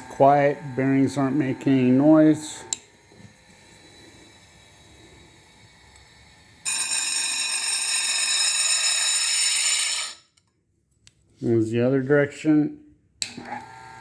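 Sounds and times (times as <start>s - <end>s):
faint motor hum: 0.0s - 4.0s
high-pitched grinder whine: 0.0s - 5.2s, 6.6s - 10.2s.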